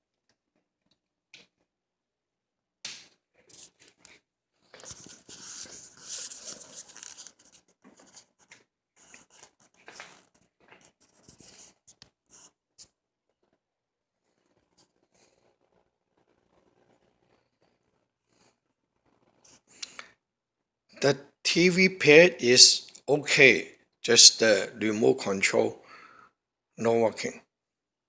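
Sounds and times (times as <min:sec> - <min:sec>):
hands rustling and scraping objects: 0:03.4 - 0:12.5.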